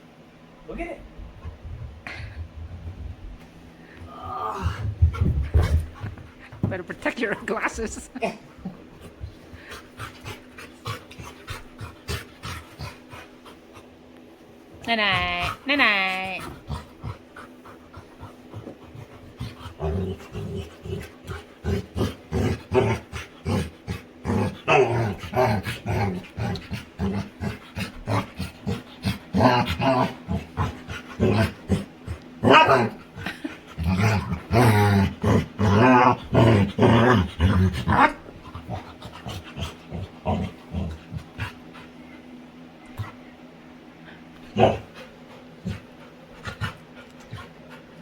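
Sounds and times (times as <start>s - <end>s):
dog grumbling and whining: 4.0s - 8.9s, 15.1s - 41.8s, 44.4s - 47.5s.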